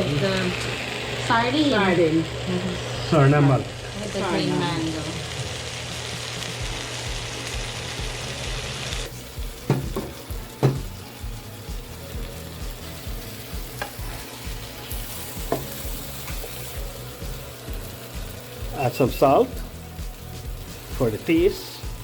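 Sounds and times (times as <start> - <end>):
curry sizzling in a pan: 0.0 - 22.0
utensil knocking against pan: 9.6 - 11.0, 15.4 - 15.8.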